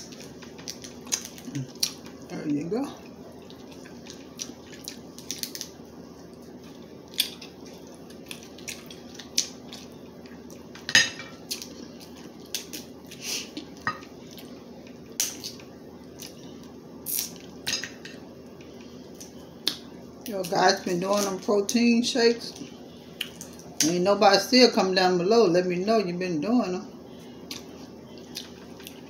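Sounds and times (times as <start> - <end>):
steady low hum: 0.0 - 29.0
crab shells cracking: 3.4 - 5.8.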